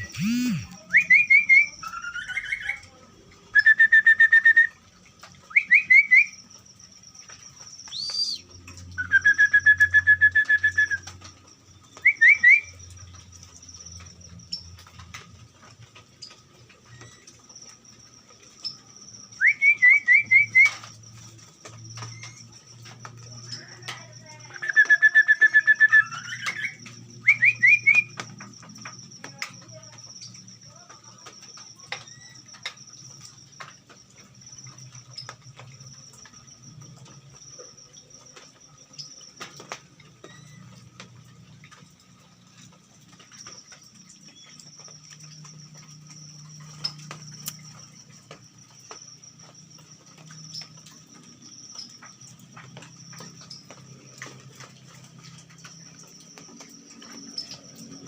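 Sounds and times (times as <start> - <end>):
bird trilling: 0.0 - 2.8, 7.9 - 8.4.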